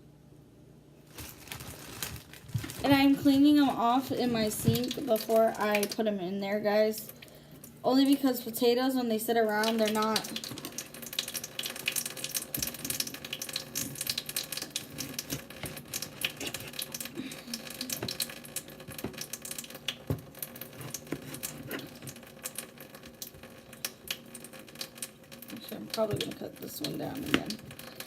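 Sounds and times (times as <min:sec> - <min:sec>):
potatoes knocking and clicking: 0:01.1 - 0:06.0
tap water running into sink: 0:02.6 - 0:06.0, 0:09.5 - 0:28.0.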